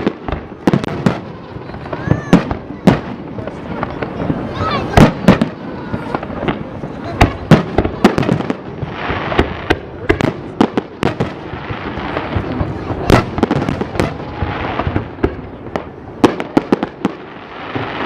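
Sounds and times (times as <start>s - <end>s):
fireworks bangs: 0.0s - 18.0s
rushing haze of noise: 0.0s - 18.0s.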